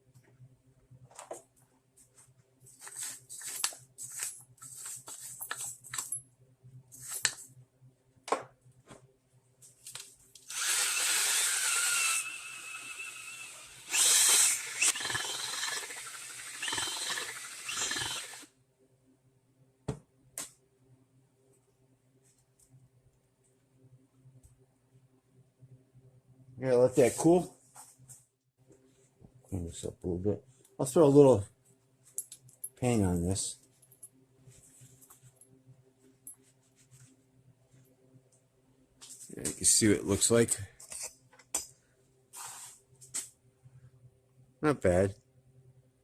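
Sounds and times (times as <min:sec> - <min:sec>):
power tool whining on metal: 0:10.5 - 0:18.5.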